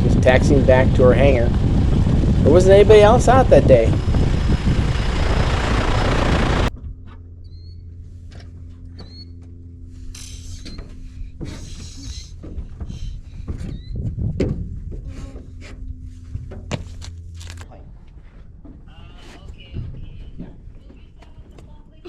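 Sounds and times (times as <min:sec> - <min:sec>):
aircraft engine and propeller: 0:00.0 - 0:17.6
steady low hum: 0:00.0 - 0:22.0.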